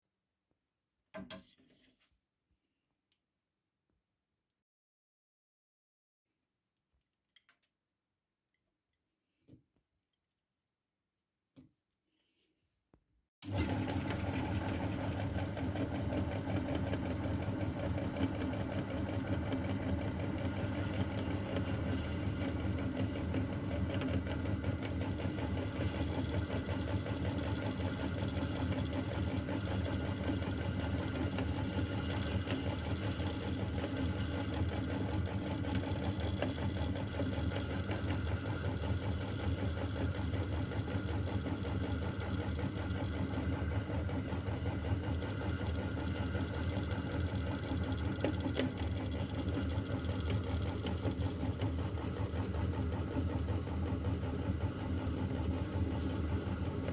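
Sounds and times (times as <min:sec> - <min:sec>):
meat grinder motor humming: 0:13.4 - 0:56.9.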